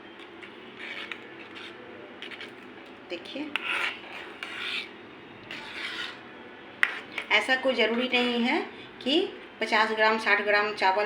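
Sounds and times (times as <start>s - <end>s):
spoon scraping a pan: 0.2s - 8.4s.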